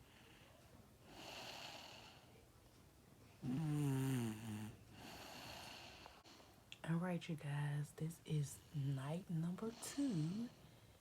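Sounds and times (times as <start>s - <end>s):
girl snoring: 1.1s - 2.2s, 3.4s - 6.2s, 9.7s - 10.6s.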